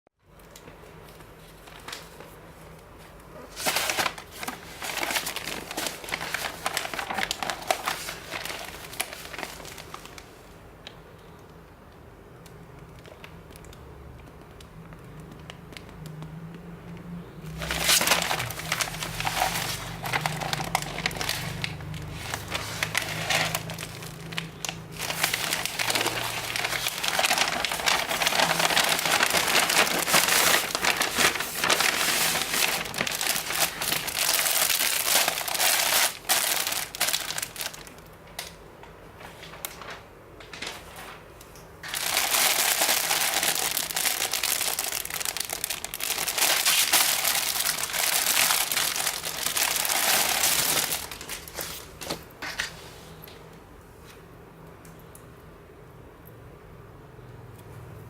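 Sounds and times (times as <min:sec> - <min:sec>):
packaging crinkling: 0:03.3 - 0:10.4, 0:17.5 - 0:38.6, 0:39.2 - 0:52.7.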